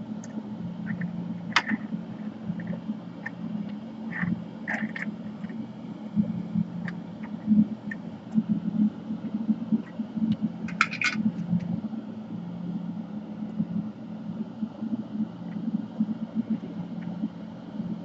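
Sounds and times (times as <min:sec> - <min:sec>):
exhaust fan humming: 0:00.0 - 0:18.0.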